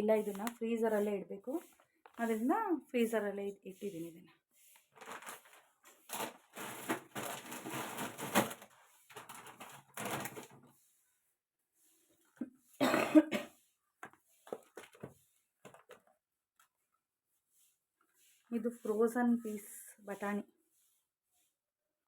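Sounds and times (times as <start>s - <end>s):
plastic packets crinkling: 0.2s - 0.6s, 4.9s - 10.6s, 14.4s - 16.1s.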